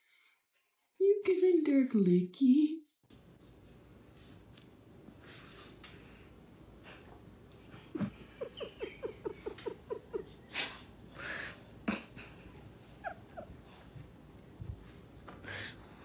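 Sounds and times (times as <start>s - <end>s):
dog whimpering: 13.0s - 13.7s.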